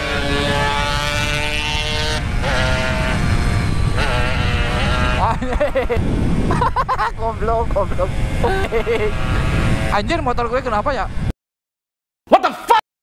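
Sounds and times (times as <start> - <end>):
motorcycle engine at high revs: 0.0 - 10.3
low wind rumble: 0.0 - 11.3.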